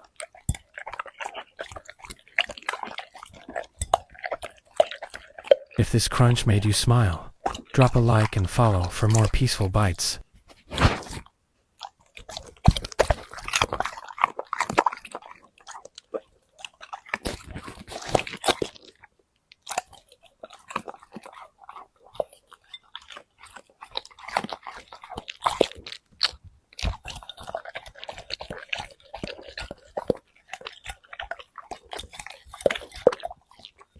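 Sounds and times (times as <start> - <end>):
dog crunching vegetables: 0.0 - 33.9.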